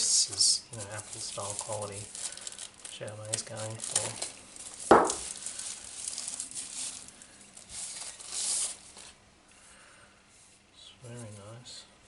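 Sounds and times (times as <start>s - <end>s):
packaging rustling: 0.7s - 9.2s
packaging knock: 3.3s - 5.5s.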